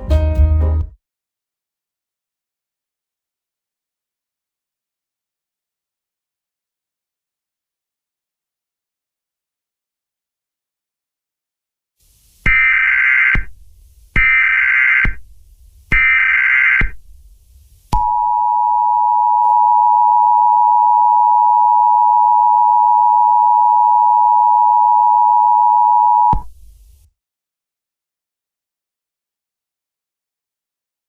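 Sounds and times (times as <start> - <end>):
warbling data tones: 12.5 - 13.5, 14.2 - 15.2, 15.9 - 17.0
two-tone attention signal: 18.0 - 26.4.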